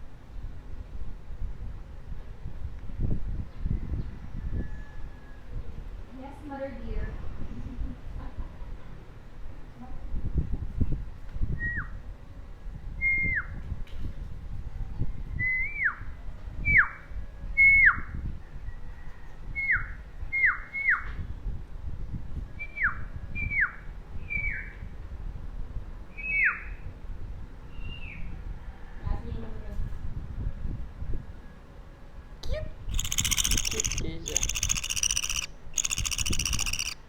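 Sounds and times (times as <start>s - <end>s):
budgerigar whistled calls: 32.9s - 37.0s.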